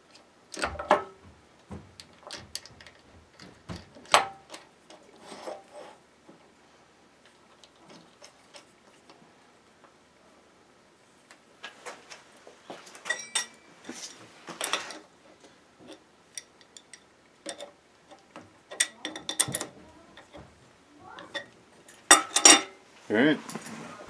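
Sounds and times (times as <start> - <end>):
metal tools clinking: 12.9 - 15.0, 15.9 - 20.3, 21.2 - 22.8.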